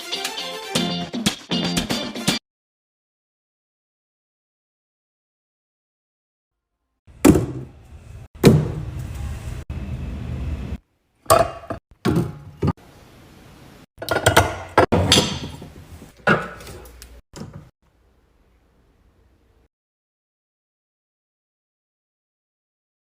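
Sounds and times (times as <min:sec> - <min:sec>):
hard knocks and thumps: 0:07.1 - 0:07.8, 0:08.4 - 0:08.9.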